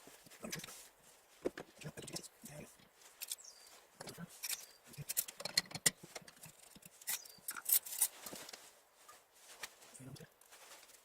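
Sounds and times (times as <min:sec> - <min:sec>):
metal engine parts clicking and knocking: 0:04.4 - 0:08.1.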